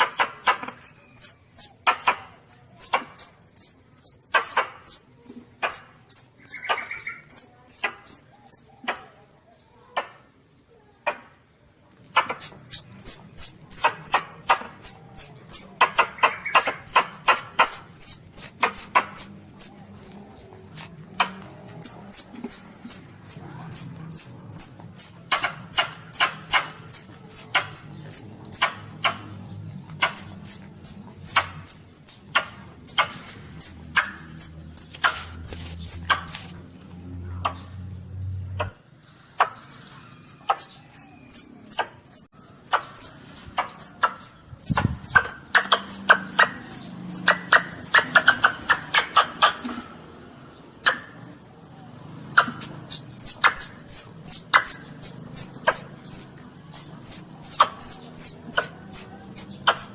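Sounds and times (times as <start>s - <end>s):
baby civet squeaky cries: 12.3s - 20.9s.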